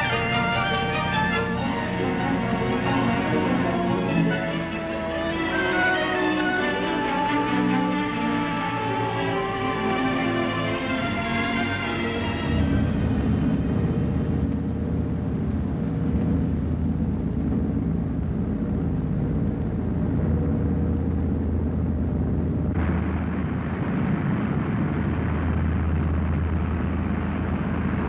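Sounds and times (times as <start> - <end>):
piston engines droning: 0.0 - 14.9.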